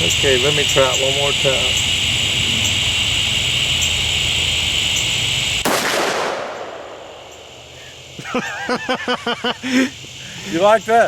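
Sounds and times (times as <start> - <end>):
high-pitched insect chorus: 0.0 - 11.0
pistol shot echoing: 5.6 - 7.4.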